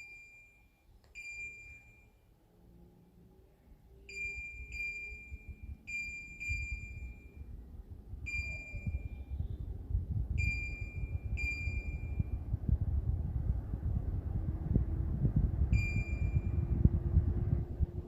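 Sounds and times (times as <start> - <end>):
low rumble: 4.3 - 18.0
short high electronic beeps: 8.3 - 9.4.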